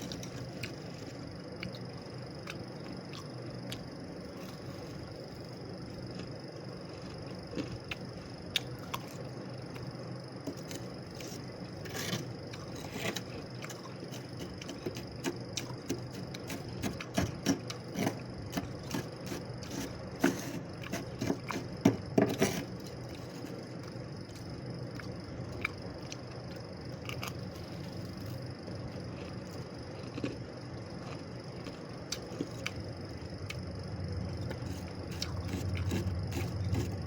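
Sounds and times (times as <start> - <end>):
freezer frost crunching and scraping: 10.5 - 23.8, 34.5 - 37.0.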